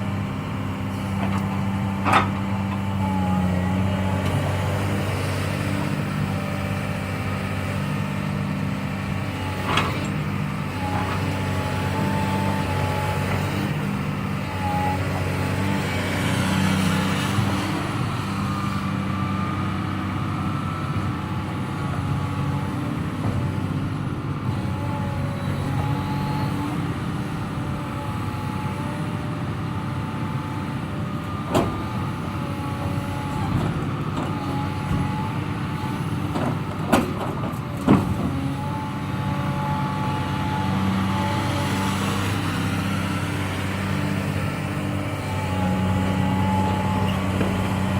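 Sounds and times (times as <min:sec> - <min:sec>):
diesel engine under load: 0:00.0 - 0:47.9
hydraulic whine: 0:31.2 - 0:47.9.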